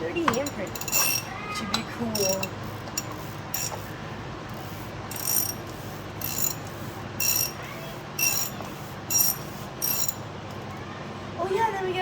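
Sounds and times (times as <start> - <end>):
ratchet wrench clicking: 0.3 - 1.3, 2.1 - 3.8, 4.5 - 7.6, 8.2 - 10.2.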